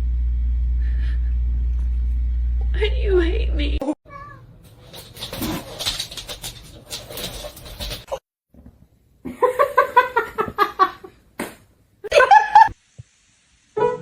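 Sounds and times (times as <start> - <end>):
rustling and tapping: 4.6 - 8.8.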